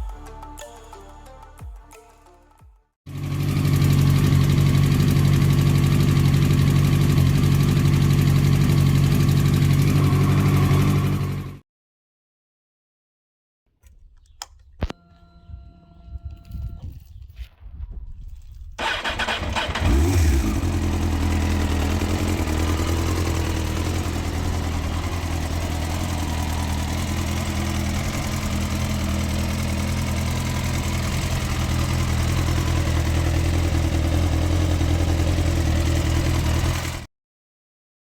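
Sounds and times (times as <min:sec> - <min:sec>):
motorcycle engine starting and idling: 0:03.1 - 0:11.6, 0:18.8 - 0:37.1.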